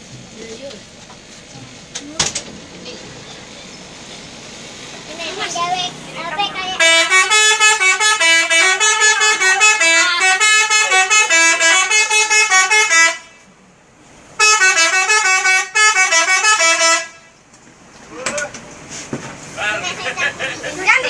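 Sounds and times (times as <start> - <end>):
multi-tone musical air horn: 6.8 - 13.4, 14.4 - 17.3.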